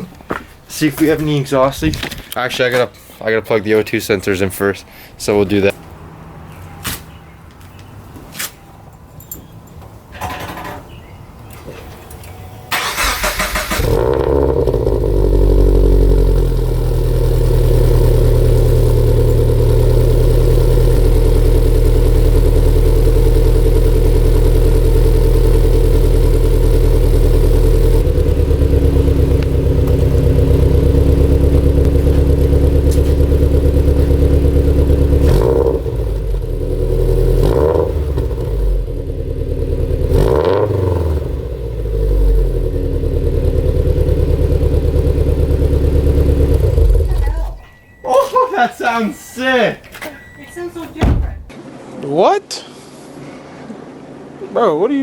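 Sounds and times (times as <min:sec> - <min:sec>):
car engine starting and idling: 0:12.2 - 0:51.5
engine revving: 0:12.7 - 0:47.3.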